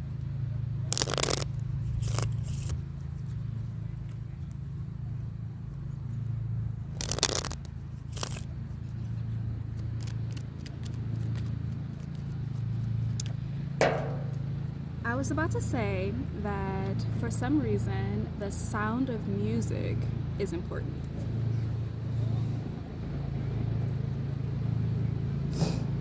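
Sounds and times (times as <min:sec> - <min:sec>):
cards being shuffled: 0:00.9 - 0:02.8, 0:07.0 - 0:08.5
steady low hum: 0:13.0 - 0:26.0.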